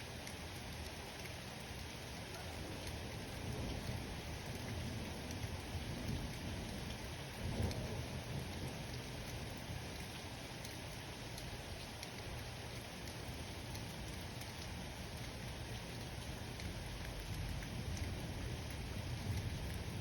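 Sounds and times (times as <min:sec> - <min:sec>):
steady rain: 0:00.0 - 0:20.0
raindrop ticks: 0:00.2 - 0:20.0
low thunder rumble: 0:03.4 - 0:09.8.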